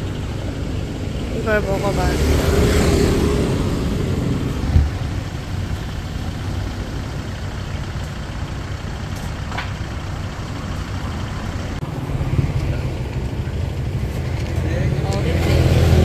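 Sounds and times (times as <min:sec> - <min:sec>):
street traffic rumble: 0:00.0 - 0:16.0.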